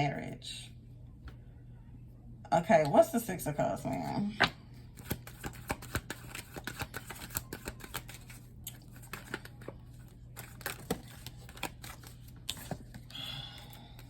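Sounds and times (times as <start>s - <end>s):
cards being shuffled: 4.0s - 13.1s.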